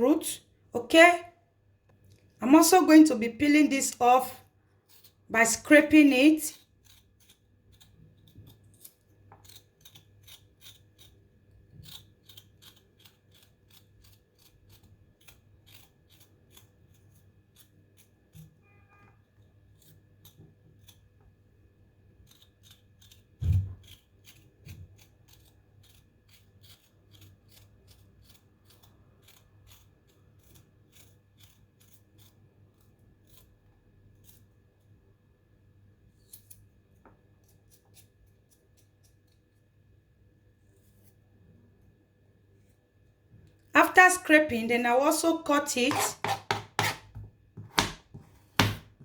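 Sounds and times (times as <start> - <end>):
scraping skin off a root: 45.1 - 49.0.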